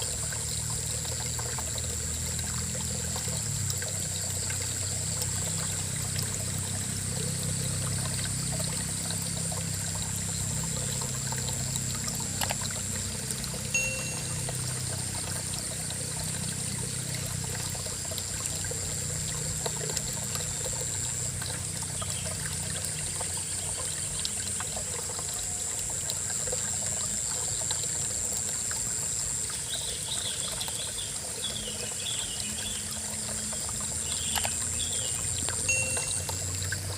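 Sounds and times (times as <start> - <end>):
river water flowing: 0.0 - 36.9
high-pitched hum: 5.4 - 30.6, 31.2 - 36.9
faint chirps: 13.8 - 14.8, 34.0 - 36.7.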